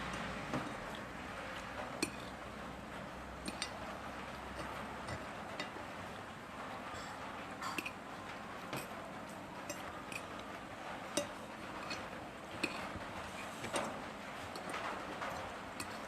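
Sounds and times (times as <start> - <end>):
tableware clinking: 6.9 - 8.0, 11.1 - 13.9.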